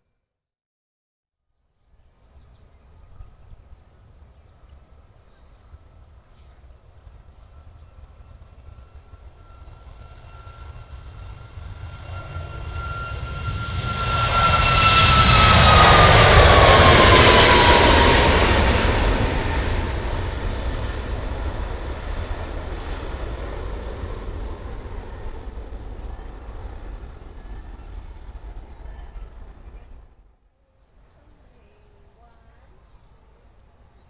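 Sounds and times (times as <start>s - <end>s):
jet engine roar: 5.6s - 30.2s.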